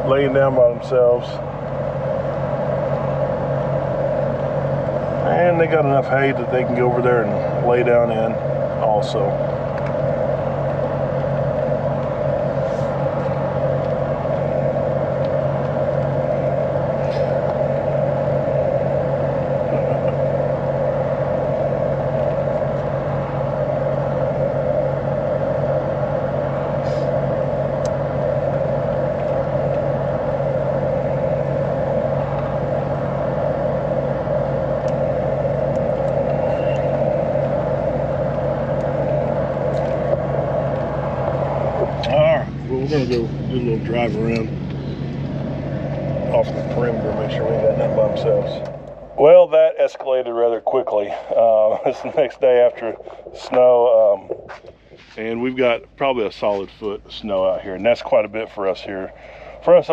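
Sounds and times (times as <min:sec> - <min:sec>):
vehicle engine humming: 0:00.0 - 0:59.9.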